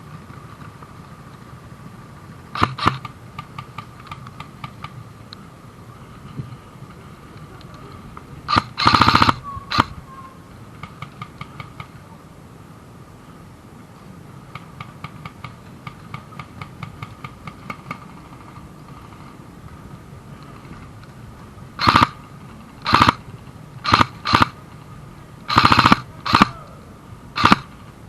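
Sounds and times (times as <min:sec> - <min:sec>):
airsoft gun firing: 0:02.6 - 0:03.8, 0:08.5 - 0:09.9, 0:21.8 - 0:22.2, 0:22.8 - 0:23.2, 0:23.8 - 0:24.6, 0:25.5 - 0:26.7, 0:27.4 - 0:27.7
faint rapid airsoft ticks: 0:07.5 - 0:09.9, 0:21.8 - 0:22.2, 0:22.8 - 0:23.2, 0:23.8 - 0:24.8, 0:25.5 - 0:26.5, 0:27.4 - 0:27.7.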